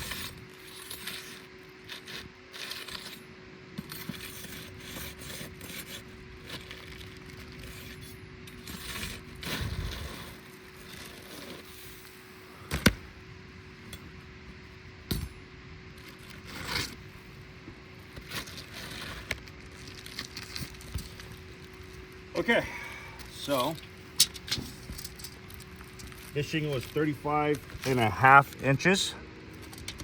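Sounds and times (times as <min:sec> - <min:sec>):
shingles scraping and rustling: 0:00.0 - 0:03.2, 0:03.8 - 0:12.2, 0:16.0 - 0:17.1, 0:18.0 - 0:22.0
faint steady hum: 0:00.0 - 0:30.0.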